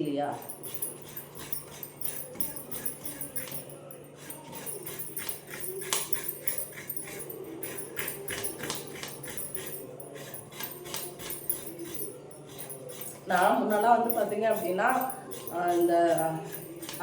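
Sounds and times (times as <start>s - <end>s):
coconut grating scrapes: 4.2s - 17.0s.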